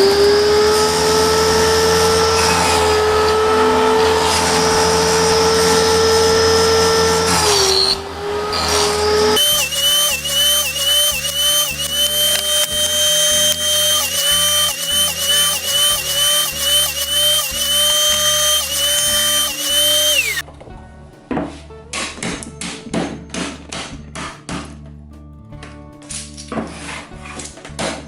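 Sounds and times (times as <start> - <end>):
power tool motor whining: 0.0 - 20.4.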